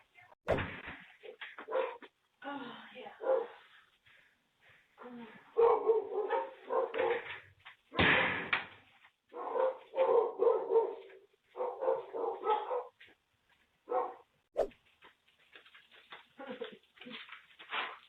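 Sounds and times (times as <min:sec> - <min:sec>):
dog barking: 0:01.6 - 0:02.1, 0:03.2 - 0:03.6, 0:05.6 - 0:07.3, 0:09.3 - 0:13.0, 0:13.8 - 0:14.3.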